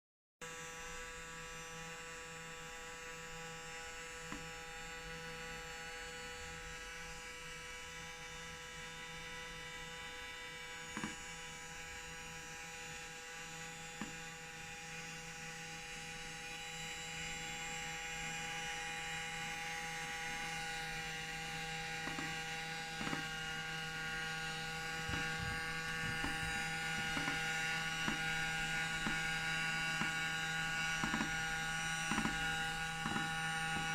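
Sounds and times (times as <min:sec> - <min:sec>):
robot vacuum motor hum: 0:01.6 - 0:33.9
sharp clicks or knocks: 0:25.0 - 0:28.3, 0:31.0 - 0:31.4, 0:32.1 - 0:33.9.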